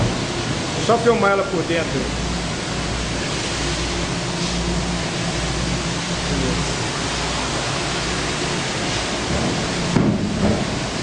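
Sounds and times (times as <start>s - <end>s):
low machine hum: 0.0s - 11.0s
water spraying: 0.0s - 11.0s.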